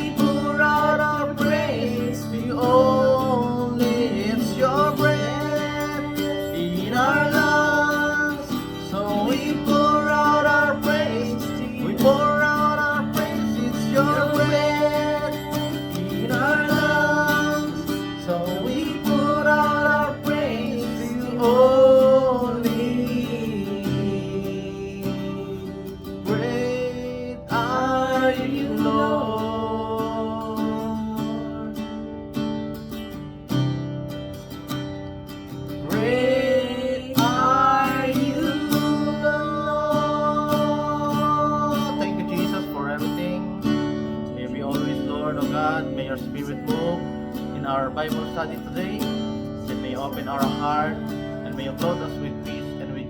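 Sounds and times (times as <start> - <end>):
person singing: 0.0 - 32.3, 35.8 - 53.0
strummed acoustic guitar: 0.0 - 53.0
person singing long notes: 35.9 - 42.8.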